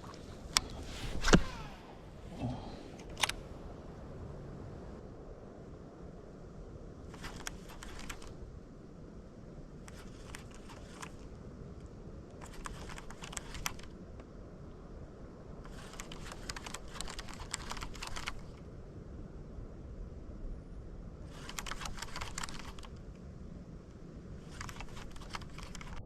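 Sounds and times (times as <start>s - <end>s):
fishing reel clicking: 12.4s - 13.9s, 15.7s - 18.5s, 21.4s - 22.9s.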